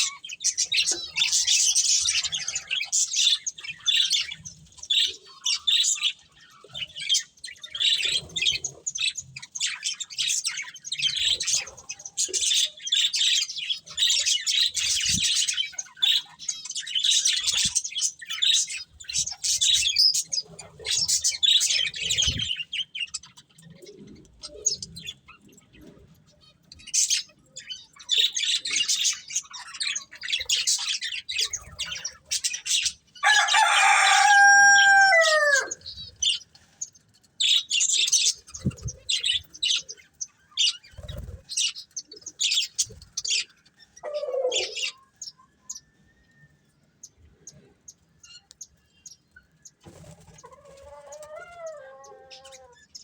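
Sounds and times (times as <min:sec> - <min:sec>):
budgerigars chirping and chattering: 0:00.0 - 0:45.9, 0:47.0 - 0:53.0
drawn-out budgerigar call: 0:26.5 - 0:45.9.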